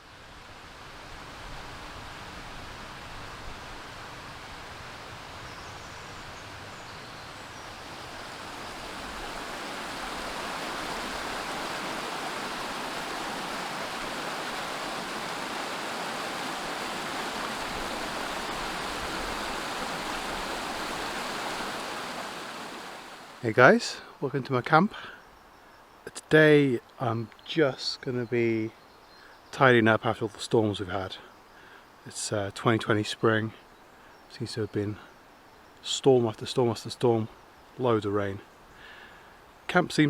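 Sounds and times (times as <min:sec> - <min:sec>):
stream water rushing: 0:06.8 - 0:23.8.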